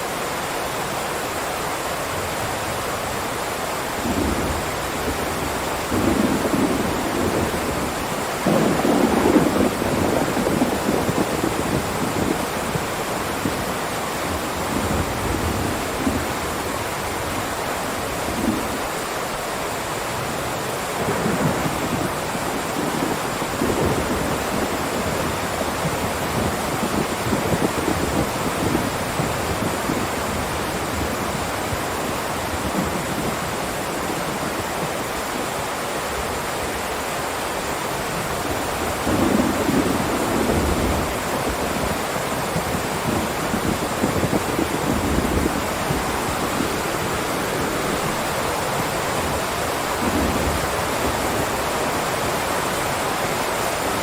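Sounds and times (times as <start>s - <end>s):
heavy rain hissing: 0.0s - 54.0s
thunder rumbling: 4.0s - 13.7s, 21.0s - 34.7s, 38.4s - 52.0s.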